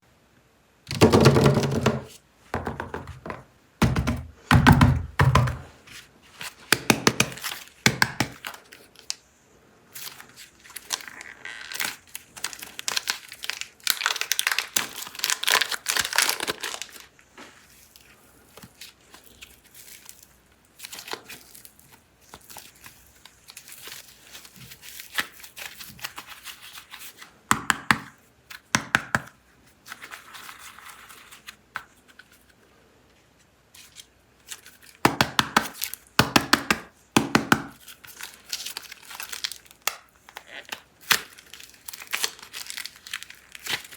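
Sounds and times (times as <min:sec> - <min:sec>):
packaging tearing and crinkling: 0:10.0 - 0:17.1, 0:33.8 - 0:36.2, 0:37.7 - 0:43.9.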